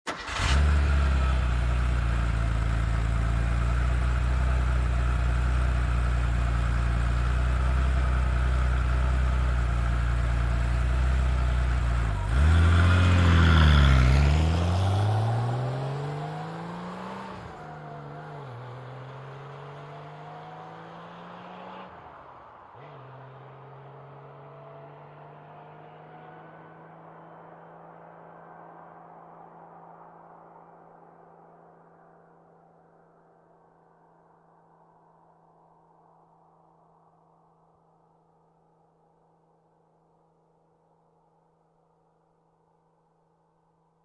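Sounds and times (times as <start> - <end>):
car engine idling and revving: 0.0 - 33.8.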